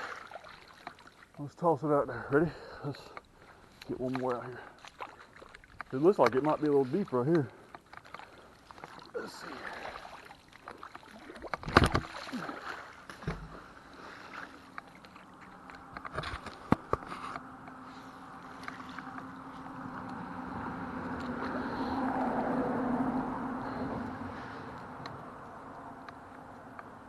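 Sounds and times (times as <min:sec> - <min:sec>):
traffic hum: 0:00.0 - 0:27.0
magnet splashing into water: 0:07.9 - 0:13.6.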